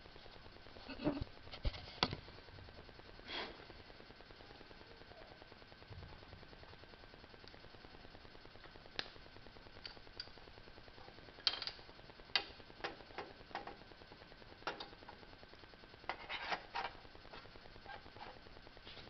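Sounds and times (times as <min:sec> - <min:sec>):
small metal parts clicking: 0:11.4 - 0:12.5.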